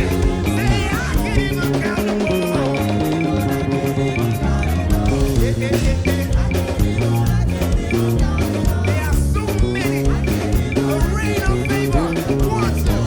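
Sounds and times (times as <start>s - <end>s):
bass line: 0.0s - 13.0s
church praise band music: 0.0s - 13.0s
guitar: 0.0s - 13.0s
person singing: 0.0s - 13.0s
steady drum beat: 0.0s - 13.0s.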